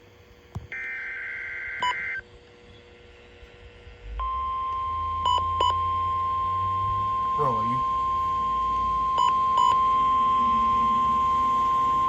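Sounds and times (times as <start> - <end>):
steady loud alert tone: 7.3 - 7.9.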